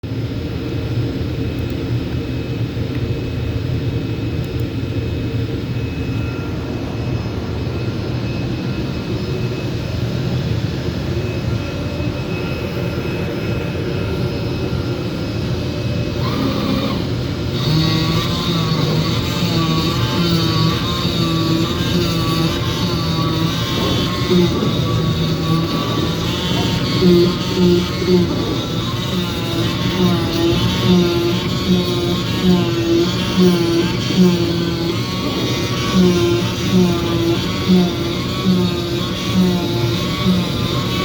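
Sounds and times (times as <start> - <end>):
cutting machine whirring: 6.1 - 41.0
high steady tones: 16.1 - 41.0.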